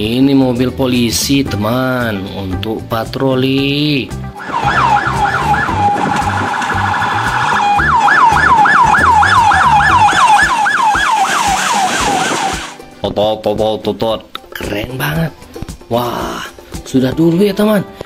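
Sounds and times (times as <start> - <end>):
toy police siren wailing: 4.4 - 12.8.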